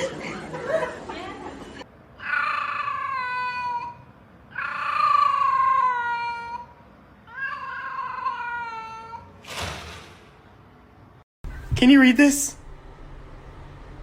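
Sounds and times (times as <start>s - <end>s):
cat meowing: 2.2s - 9.3s.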